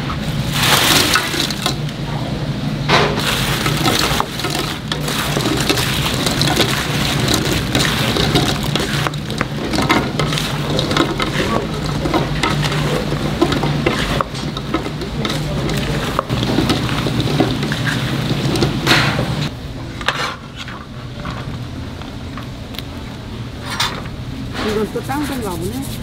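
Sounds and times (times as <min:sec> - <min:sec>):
chicken sizzling in hot oil: 0:03.2 - 0:19.5.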